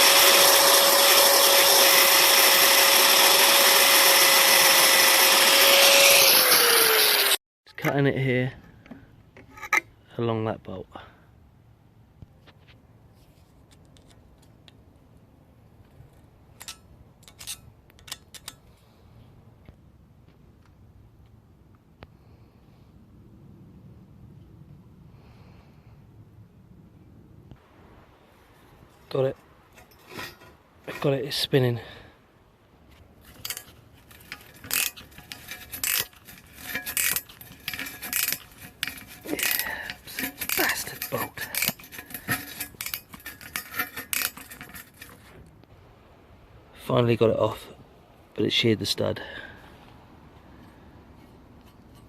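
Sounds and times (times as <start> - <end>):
hand tools clicking on metal: 16.6 - 18.6, 33.2 - 45.3.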